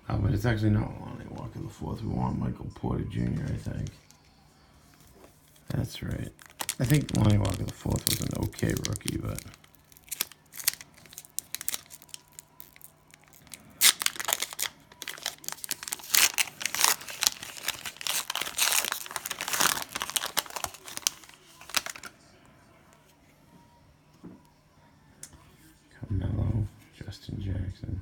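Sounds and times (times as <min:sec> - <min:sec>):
cellophane tearing and crinkling: 0:06.1 - 0:22.1.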